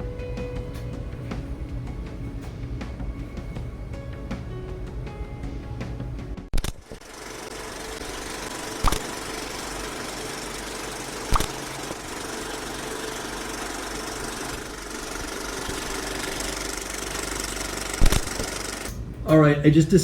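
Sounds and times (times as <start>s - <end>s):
sharp clicks: 6.5s - 7.1s, 8.8s - 9.6s, 11.3s - 12.0s, 17.4s - 19.0s
small motor humming: 6.6s - 19.0s.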